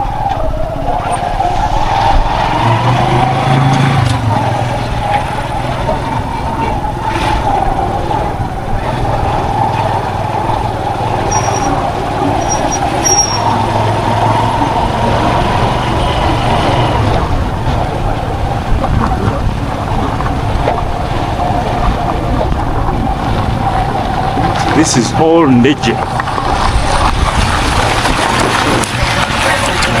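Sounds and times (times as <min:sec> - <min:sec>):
vehicle engine and road rumble: 0:00.0 - 0:30.0
high squeaks: 0:11.2 - 0:13.7.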